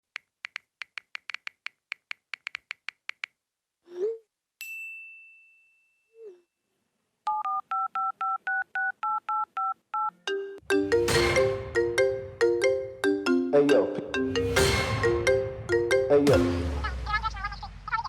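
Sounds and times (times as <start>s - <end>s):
touch-tone dialing beeps: 7.3s - 10.2s
high notification ding: 10.7s - 13.0s, 13.8s - 17.0s.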